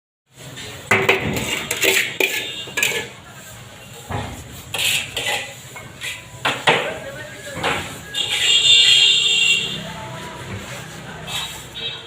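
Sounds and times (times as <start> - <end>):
trowel scraping against metal: 0.6 - 3.4, 4.0 - 6.6, 7.8 - 9.7.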